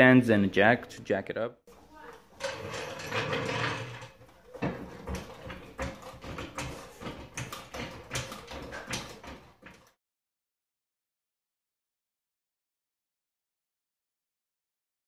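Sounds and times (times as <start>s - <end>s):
floor jack pumping knocks and clicks: 2.4s - 10.0s.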